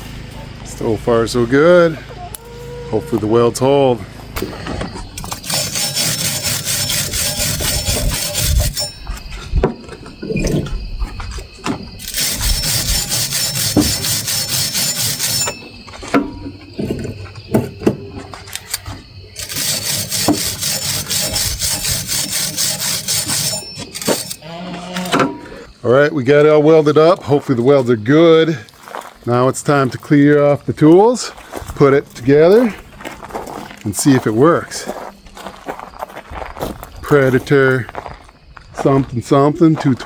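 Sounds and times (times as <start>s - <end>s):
electric welder arc crackling: 19.4s - 24.4s.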